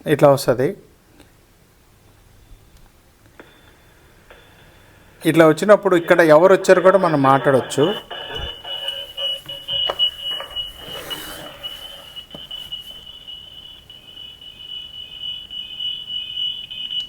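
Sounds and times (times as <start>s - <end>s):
high-pitched electronic whistle: 5.6s - 17.0s.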